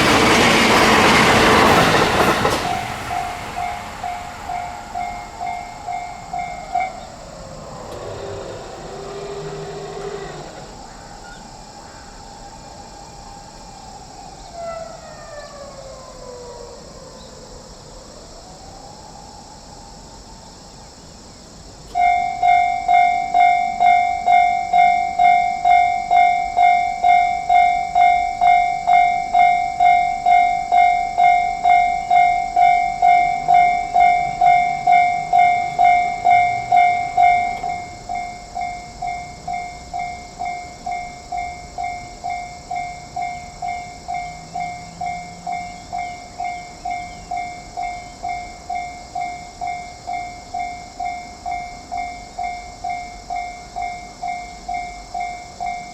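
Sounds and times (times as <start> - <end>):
level crossing warning bell ringing: 0.0 - 13.9, 21.9 - 55.9.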